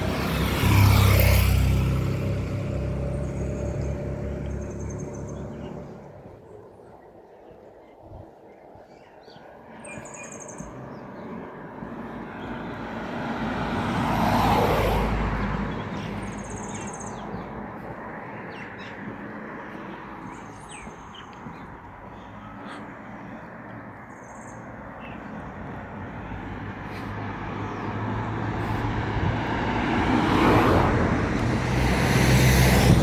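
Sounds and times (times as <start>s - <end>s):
vehicle driving past: 0.0s - 6.4s, 12.8s - 17.6s, 25.6s - 33.0s
small birds chirping: 0.0s - 13.7s, 14.4s - 33.0s.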